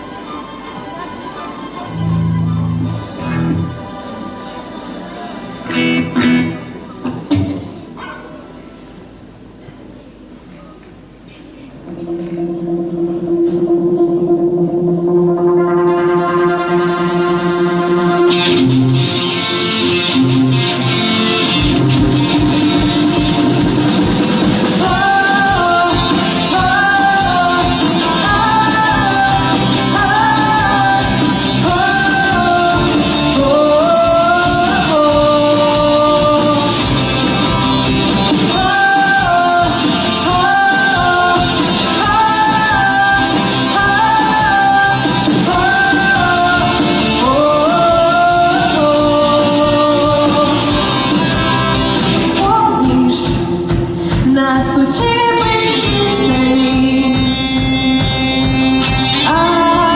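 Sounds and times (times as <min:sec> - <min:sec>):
rock band guitar: 0:01.8 - 0:08.0, 0:11.9 - 0:59.9
woman singing: 0:24.6 - 0:37.6, 0:38.3 - 0:51.4, 0:52.2 - 0:58.1, 0:58.7 - 0:59.9.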